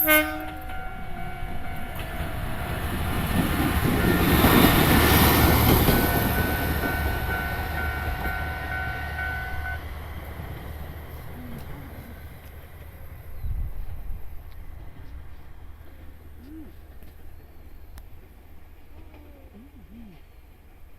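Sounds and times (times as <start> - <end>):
crossing warning bell ringing: 0.0 - 10.3
diesel railcar passing: 0.0 - 20.9.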